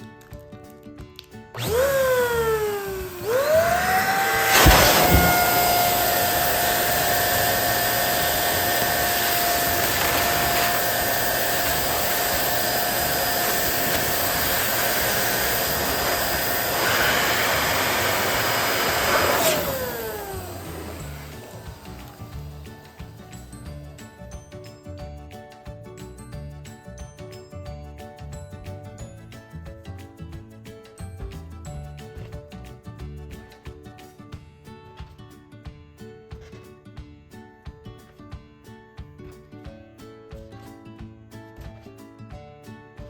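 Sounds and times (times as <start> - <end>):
balloon inflator motor whine: 1.6 - 23.6.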